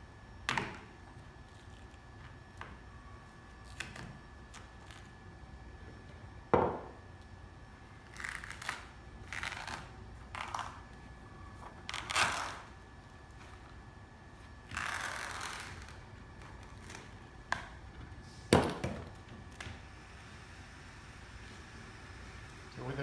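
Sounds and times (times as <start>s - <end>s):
cable jacket scraping and tearing: 8.0s - 10.8s, 11.9s - 12.7s, 14.6s - 16.0s.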